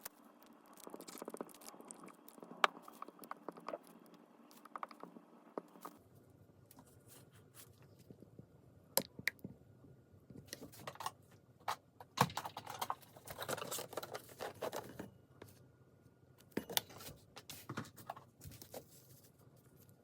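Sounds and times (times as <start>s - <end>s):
rustling and scraping: 12.4s - 15.6s, 16.8s - 20.0s.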